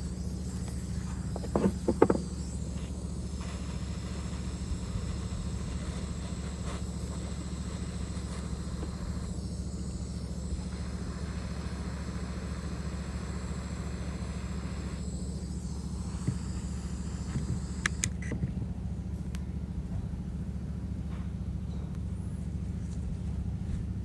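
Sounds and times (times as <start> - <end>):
soldering torch burning: 0.0 - 18.1.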